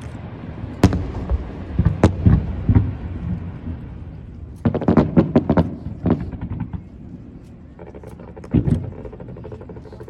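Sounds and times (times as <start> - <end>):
fireworks crackling pops: 0.0 - 10.0
fireworks bangs: 0.2 - 6.9.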